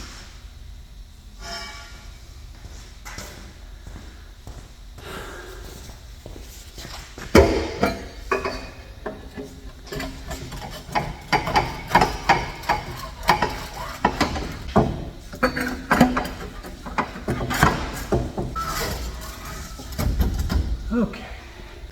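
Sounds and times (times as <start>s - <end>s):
metallic clanks and knocks: 6.8s - 20.9s.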